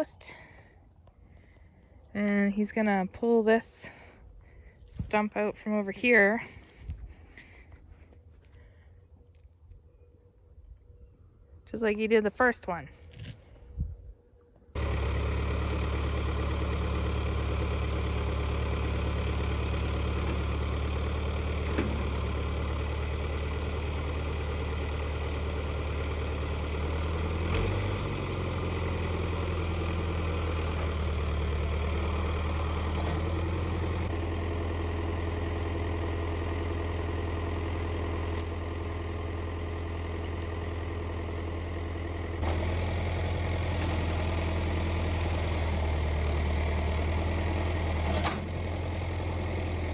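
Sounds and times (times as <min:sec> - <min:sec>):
machine engine droning: 0:14.6 - 0:49.9.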